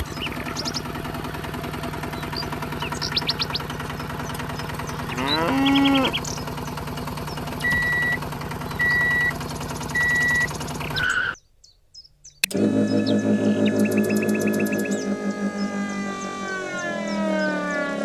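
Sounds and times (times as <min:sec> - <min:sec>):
low mechanical hum: 0:00.0 - 0:11.3, 0:12.4 - 0:18.0
cow mooing: 0:05.1 - 0:06.2.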